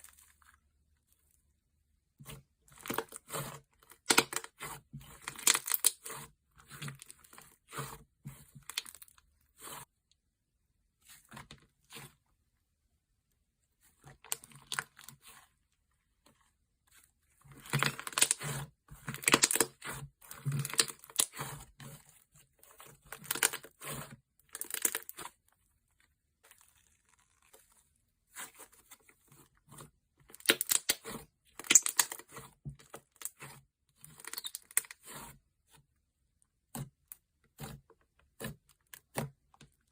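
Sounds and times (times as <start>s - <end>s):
slime crackling and tearing: 2.7s - 8.0s, 17.6s - 22.0s, 22.7s - 25.4s, 30.3s - 35.3s.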